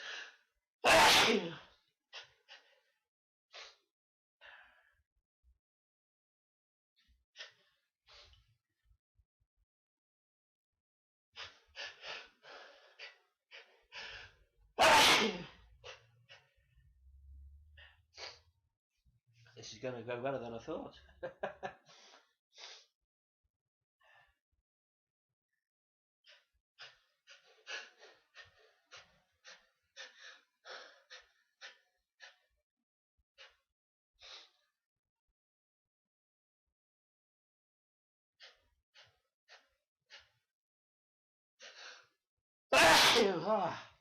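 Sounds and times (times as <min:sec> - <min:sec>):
man sneezing: 0:00.8 - 0:01.6, 0:14.8 - 0:15.6, 0:42.8 - 0:43.8.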